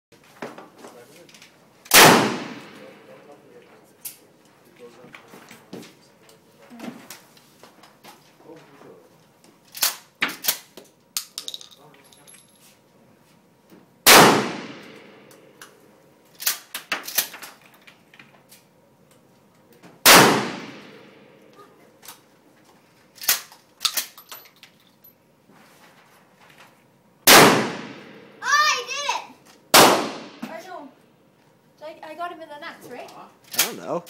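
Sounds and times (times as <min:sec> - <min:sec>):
shotgun shots echoing: 0:01.9 - 0:03.1, 0:14.1 - 0:15.3, 0:20.0 - 0:21.3, 0:27.3 - 0:28.4, 0:29.7 - 0:30.5.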